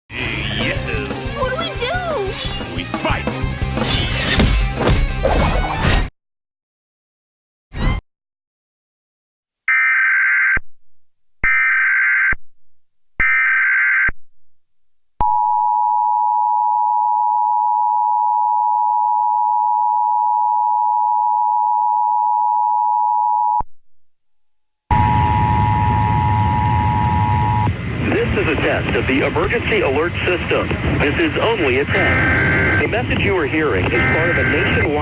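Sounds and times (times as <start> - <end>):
digital data bursts: 34.0 - 35.0.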